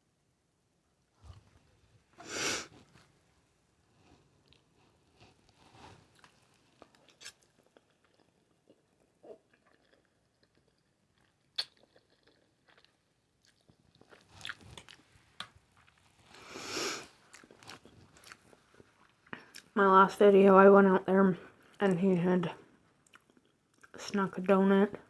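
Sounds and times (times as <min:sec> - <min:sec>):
person chewing wetly: 0:04.4 - 0:16.4, 0:17.0 - 0:19.7.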